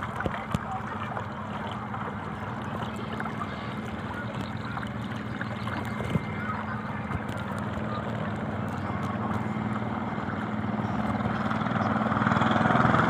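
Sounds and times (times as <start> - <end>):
engine droning: 0.0 - 13.0.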